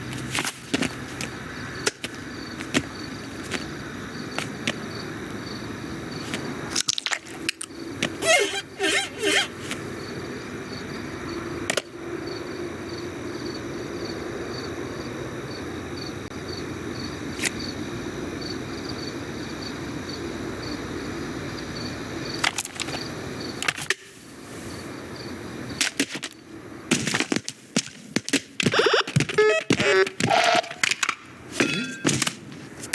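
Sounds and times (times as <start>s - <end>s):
steady background hum: 0.0s - 25.8s.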